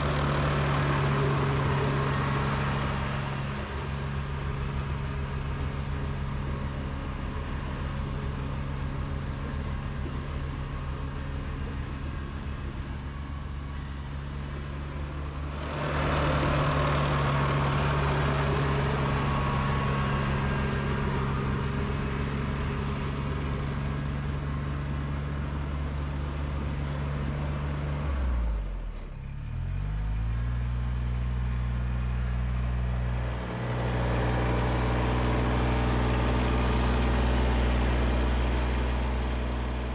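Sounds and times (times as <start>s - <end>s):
tractor diesel engine running: 0.0s - 39.9s.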